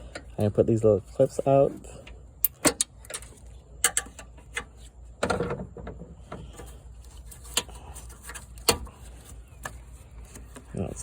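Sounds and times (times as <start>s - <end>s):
scraping rustle: 6.0s - 11.0s.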